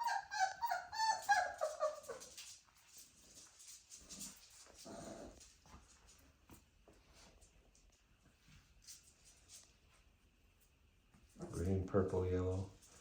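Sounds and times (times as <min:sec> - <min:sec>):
puppies whimpering and yipping: 0:00.0 - 0:02.4.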